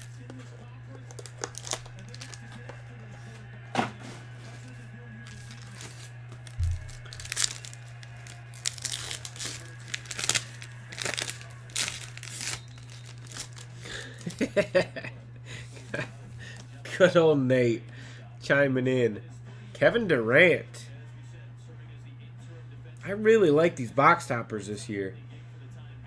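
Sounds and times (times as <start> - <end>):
card wrappers tearing and crinkling: 0.0 - 3.3, 4.4 - 14.8
steady low hum: 0.0 - 26.0.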